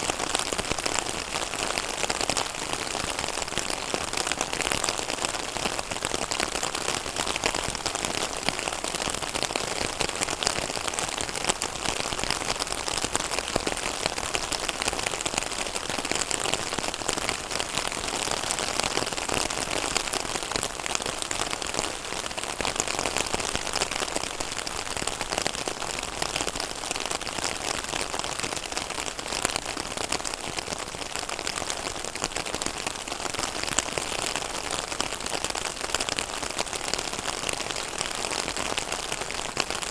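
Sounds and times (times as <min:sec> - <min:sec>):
rain falling on pond: 0:00.0 - 0:39.9.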